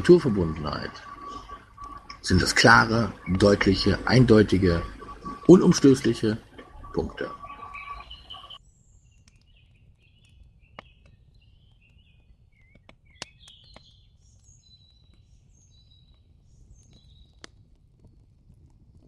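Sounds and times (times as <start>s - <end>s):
faint birds chirping: 0.0s - 17.6s
sharp clicks: 1.1s - 2.3s.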